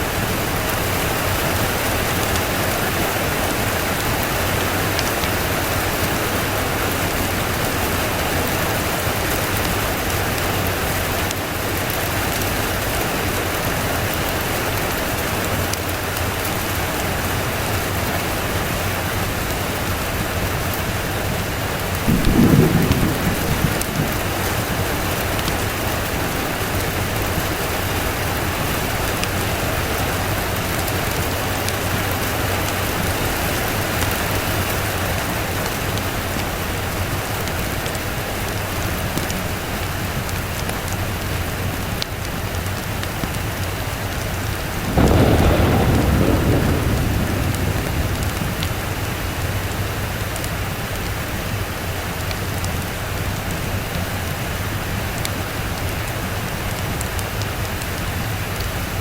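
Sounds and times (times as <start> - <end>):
steady rain falling: 0.0 - 59.0
thunder rumbling: 16.9 - 37.7, 44.6 - 51.6.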